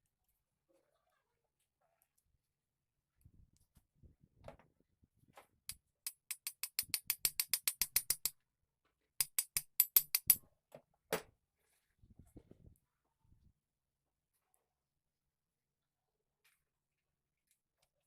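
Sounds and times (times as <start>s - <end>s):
rapid sharp tool clicks: 5.7s - 8.3s, 9.2s - 10.4s.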